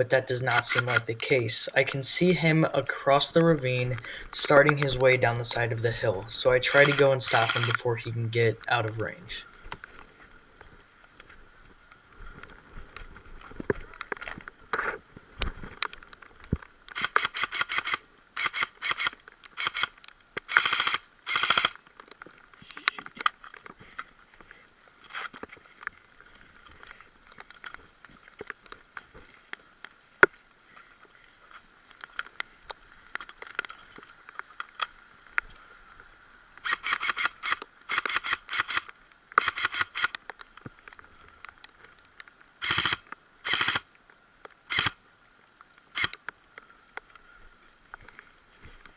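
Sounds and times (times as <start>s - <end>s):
airsoft rifle full-auto bursts: 6.0s - 8.1s, 20.5s - 21.8s, 36.6s - 38.8s, 39.4s - 40.1s, 42.6s - 43.8s, 44.7s - 45.0s.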